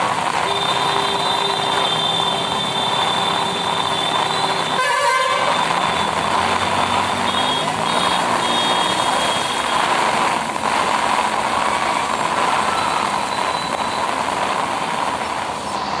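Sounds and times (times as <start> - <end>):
traffic on wet road: 0.0 - 16.0
held horn tone: 0.4 - 9.8.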